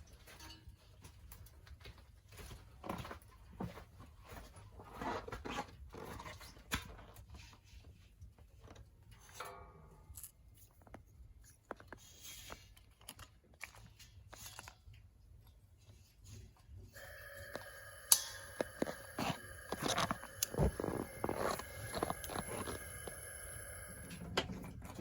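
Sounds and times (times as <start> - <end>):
light clicks and knocks of cookware: 0.0 - 1.7.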